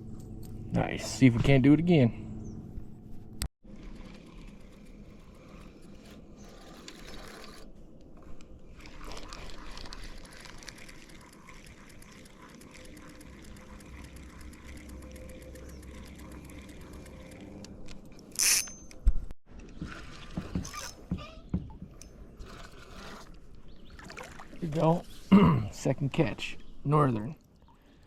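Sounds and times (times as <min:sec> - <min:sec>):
fishing reel gears ticking: 0:08.8 - 0:18.9.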